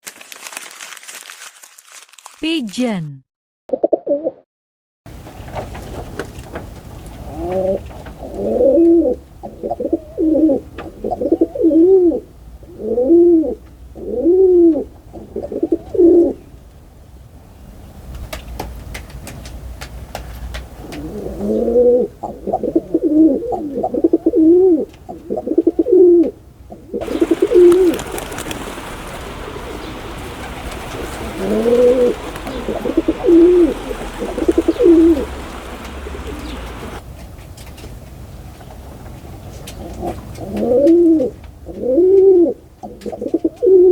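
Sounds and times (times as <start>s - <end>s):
pigeon cooing: 7.2s - 16.4s, 20.8s - 37.0s, 39.8s - 43.9s
steady hiss: 27.0s - 37.0s.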